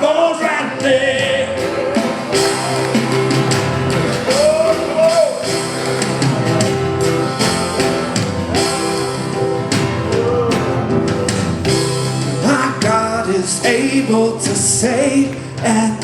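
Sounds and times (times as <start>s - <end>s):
person singing: 0.0s - 2.9s, 9.9s - 11.3s, 12.2s - 16.0s
drum beat: 0.0s - 16.0s
rock band playing: 0.0s - 16.0s.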